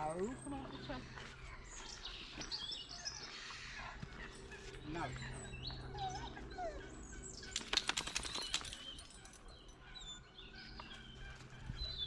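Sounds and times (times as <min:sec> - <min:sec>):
small birds chirping: 0:00.0 - 0:12.0
sharp taps or flutters: 0:07.5 - 0:08.8.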